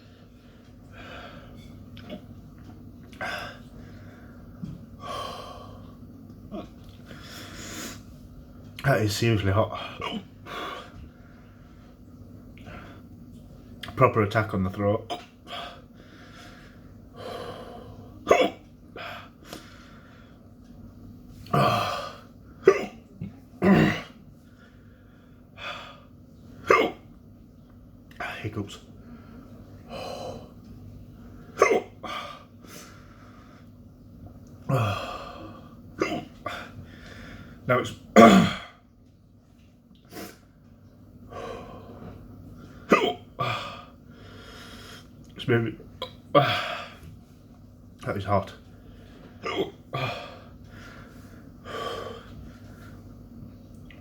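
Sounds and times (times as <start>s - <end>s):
man coughing: 9.8s - 10.3s, 18.2s - 18.7s, 22.6s - 24.2s, 26.7s - 27.0s, 31.6s - 32.1s, 36.0s - 36.3s, 38.2s - 38.8s, 42.9s - 43.6s, 49.4s - 50.1s
man hiccuping: 10.0s - 10.3s, 18.2s - 18.6s, 22.6s - 23.0s, 23.6s - 24.1s, 26.7s - 27.0s, 31.6s - 32.0s, 36.0s - 36.3s, 38.2s - 38.7s, 42.9s - 43.6s, 49.4s - 49.8s
man breathing heavily: 48.8s - 53.1s.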